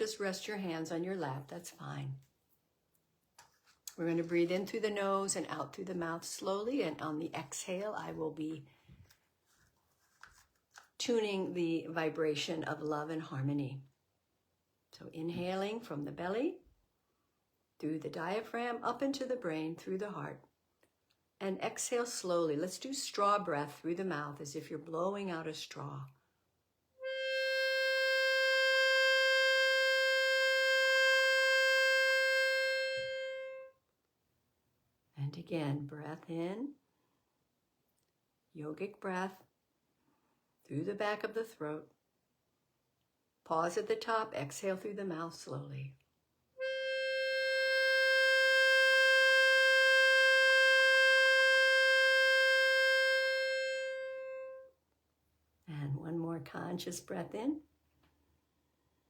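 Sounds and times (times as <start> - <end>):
harmonica long note: 27.0 - 33.7, 46.6 - 54.7.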